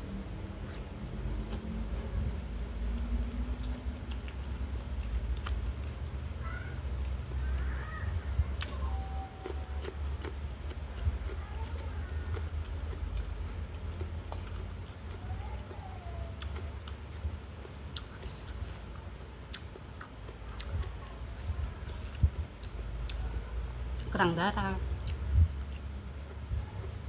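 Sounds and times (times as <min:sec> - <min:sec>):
chewing with sharp clicks: 0:01.5 - 0:01.7, 0:03.0 - 0:06.0, 0:08.5 - 0:23.3, 0:25.0 - 0:27.0.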